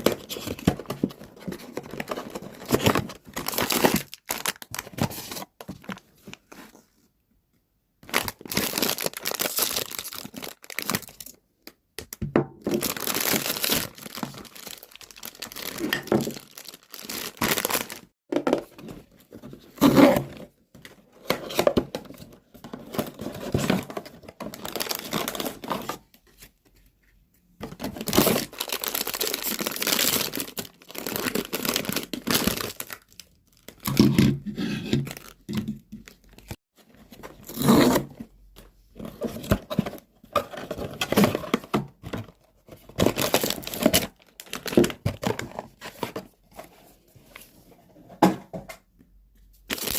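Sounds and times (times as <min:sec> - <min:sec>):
packaging torn and crinkled: 0:02.0 - 0:05.9, 0:08.0 - 0:11.4, 0:12.7 - 0:18.1, 0:28.0 - 0:34.0, 0:43.0 - 0:44.9, 0:49.7 - 0:49.9.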